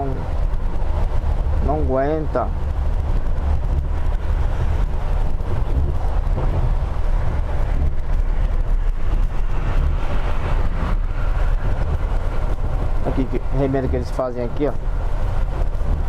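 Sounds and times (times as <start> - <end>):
coach engine and tyres rumbling: 0.0 - 16.0.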